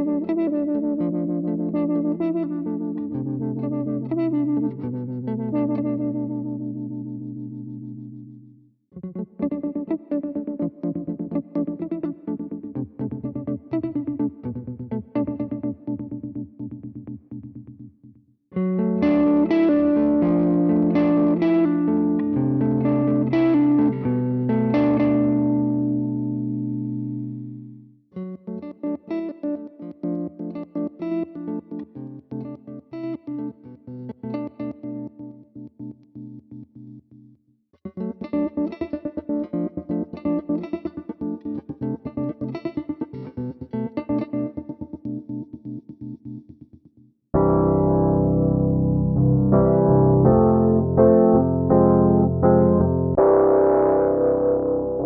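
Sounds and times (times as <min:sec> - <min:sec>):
processed electric guitar chords: 0:00.0 - 0:17.9, 0:18.5 - 0:46.6, 0:47.4 - 0:55.0
pulsing guitar pattern: 0:00.0 - 0:55.0.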